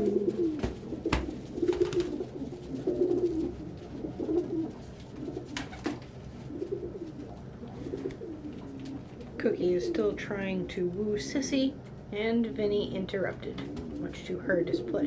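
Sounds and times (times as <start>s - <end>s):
pigeons cooing: 0.0s - 10.2s, 13.3s - 15.0s.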